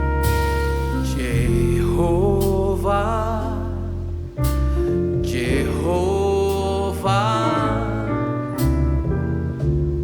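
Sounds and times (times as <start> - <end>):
drums with cymbal crashes: 0.0 - 1.1
held melody line with vibrato: 0.0 - 8.9
double bass: 0.0 - 10.0
piano: 0.0 - 10.0.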